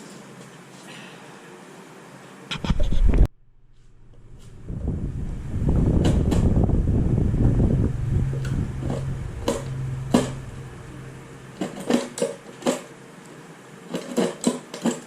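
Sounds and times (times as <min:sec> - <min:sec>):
steady low hum: 0:02.5 - 0:13.1
small motor rumble: 0:03.7 - 0:12.7.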